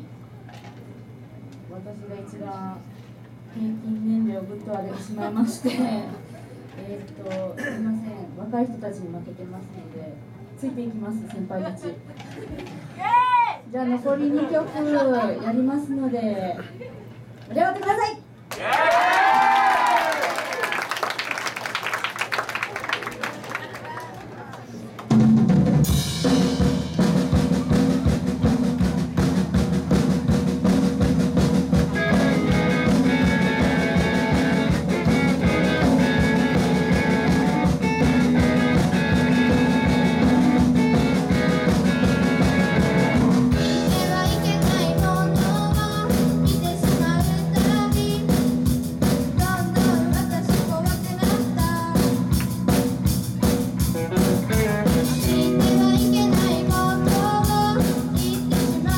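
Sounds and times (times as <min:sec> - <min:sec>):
drum kit kick and snare: 0:25.1 - 0:58.9
live band playing: 0:25.1 - 0:58.9.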